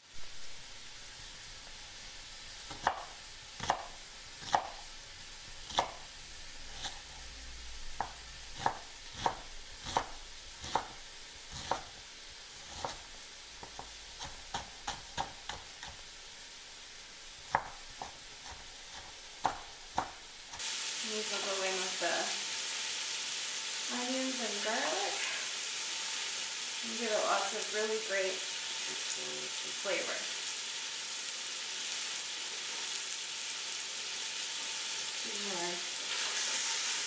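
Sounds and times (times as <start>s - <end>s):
meat sizzling in a pan: 0.0s - 37.0s
knife chopping on cutting board: 2.7s - 4.8s, 5.6s - 6.0s, 6.7s - 7.0s, 8.0s - 12.0s, 12.6s - 16.1s, 17.5s - 20.3s.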